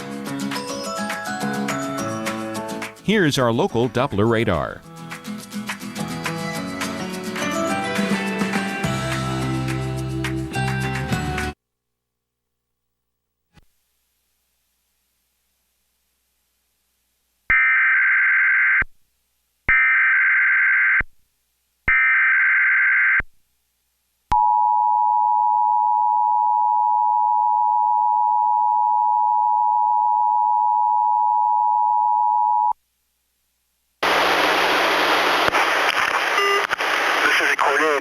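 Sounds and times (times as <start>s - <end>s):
loud noisy hiss: 34.0s - 38.0s.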